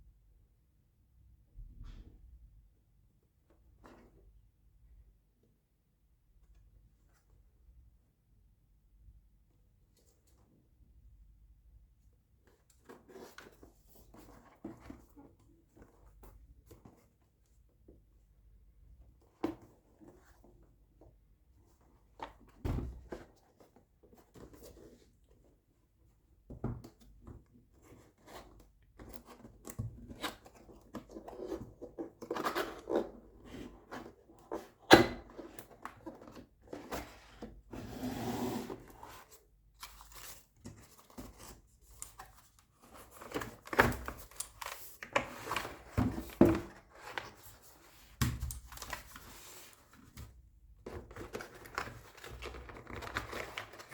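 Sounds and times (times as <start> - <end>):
cardboard box knocks and sliding: 45.8 - 46.8.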